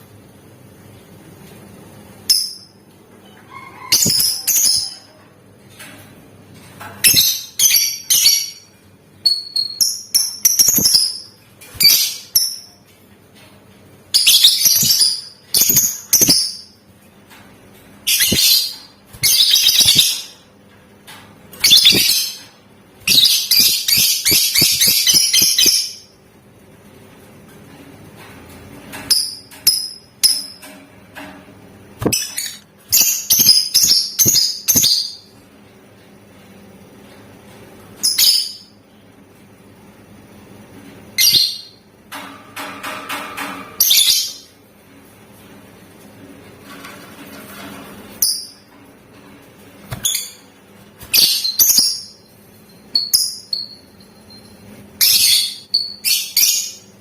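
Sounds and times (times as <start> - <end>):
bird rattling trill: 18.1 - 20.4, 23.0 - 26.0.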